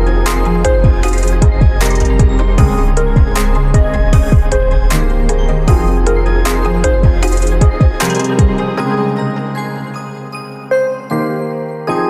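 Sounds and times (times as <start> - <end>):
sustained chords: 0.7 - 8.7.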